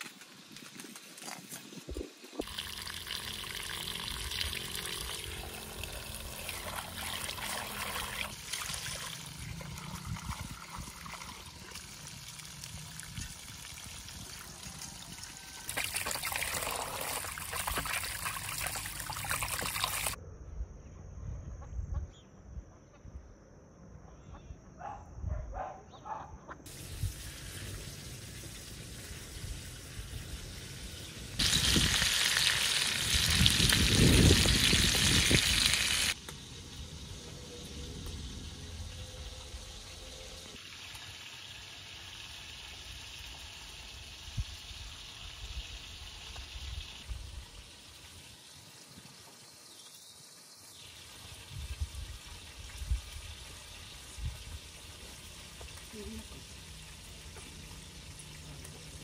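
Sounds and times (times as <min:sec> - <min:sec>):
water trickling and splashing: 0:00.1 - 0:20.2, 0:26.7 - 0:36.2, 0:39.1 - 0:59.0.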